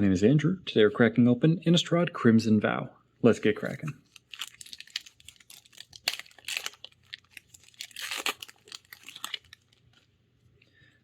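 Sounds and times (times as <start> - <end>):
foil wrapper tearing and crinkling: 4.1 - 10.1.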